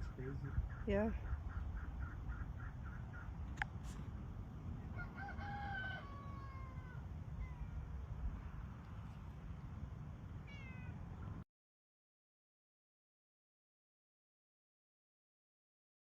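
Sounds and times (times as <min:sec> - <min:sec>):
animal calling: 0:00.0 - 0:04.0.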